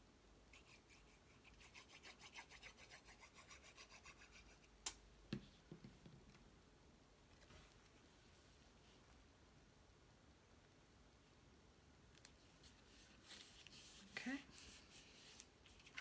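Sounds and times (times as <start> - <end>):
soft knock and light taps: 5.3 - 6.4.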